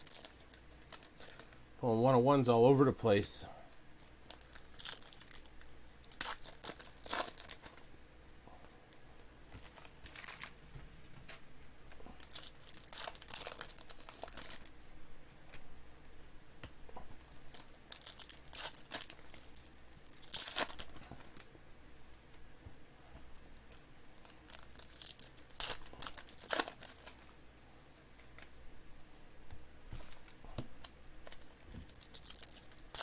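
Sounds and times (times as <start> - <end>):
wrappers crinkling and tearing: 0.0 - 1.6, 4.0 - 7.9, 9.6 - 10.7, 11.9 - 15.6, 17.1 - 21.5, 23.7 - 27.4, 30.0 - 33.0.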